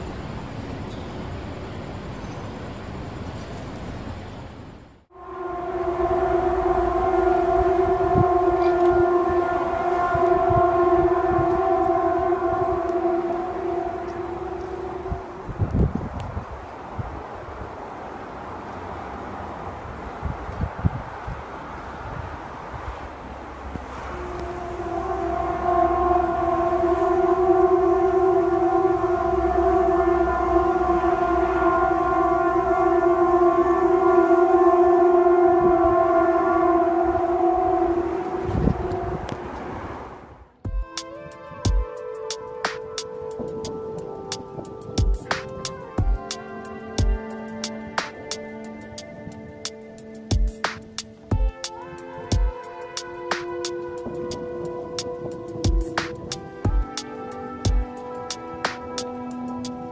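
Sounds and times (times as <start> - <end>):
loud horn-like drone: 5.1 - 59.9.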